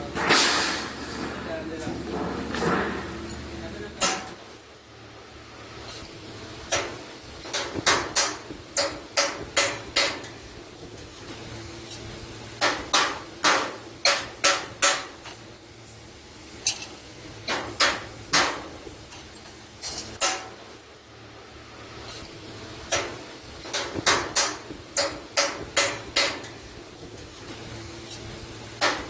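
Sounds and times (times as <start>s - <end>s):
hammer striking sheet iron: 0.0s - 4.5s, 6.7s - 10.4s, 12.6s - 15.2s, 17.5s - 18.8s, 20.2s - 20.8s, 22.9s - 26.6s, 28.8s - 29.0s.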